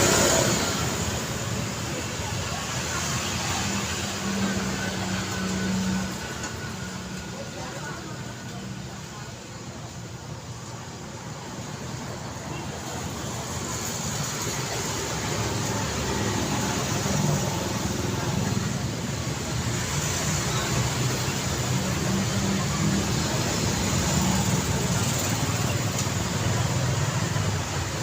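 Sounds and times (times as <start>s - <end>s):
passing cars: 0.0s - 8.2s.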